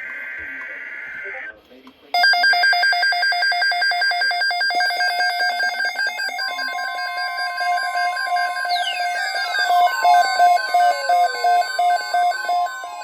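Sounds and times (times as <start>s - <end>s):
electronic alarm beeping on two pitches: 2.2s - 13.0s
steady attention tone: 3.7s - 13.0s.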